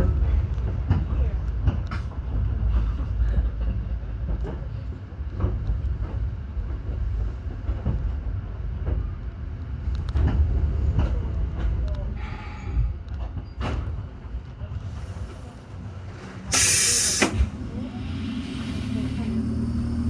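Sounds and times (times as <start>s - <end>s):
train rumbling: 0.0s - 20.0s
short hiss: 16.5s - 17.5s.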